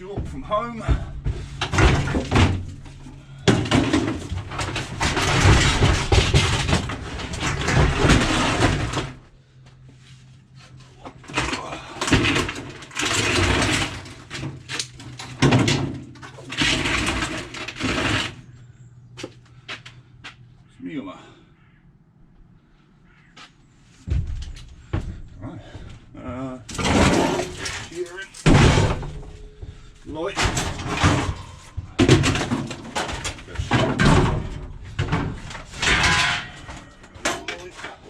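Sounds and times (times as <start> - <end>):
scrap metal clattering: 0.0 - 9.2, 10.7 - 18.4, 26.7 - 38.0.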